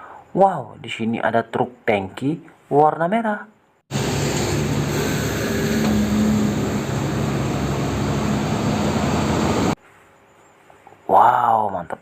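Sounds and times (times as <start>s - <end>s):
engine-like rumble with hiss: 3.9s - 9.8s
low hum: 3.9s - 9.8s.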